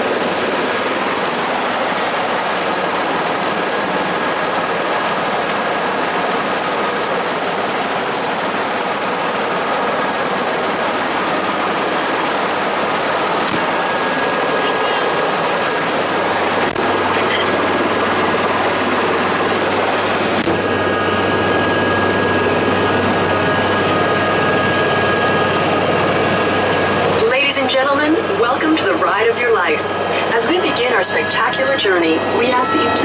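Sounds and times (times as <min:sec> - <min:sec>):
helicopter rotor and turbine noise: 0:00.0 - 0:33.0
thin high whine: 0:30.1 - 0:33.0.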